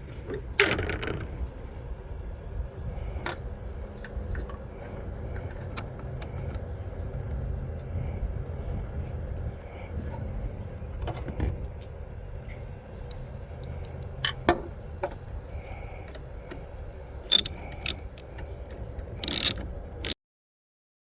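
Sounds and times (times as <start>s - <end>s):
steady low rumble: 1.2s - 20.0s
sharp clicks: 17.3s - 18.0s, 19.2s - 20.2s.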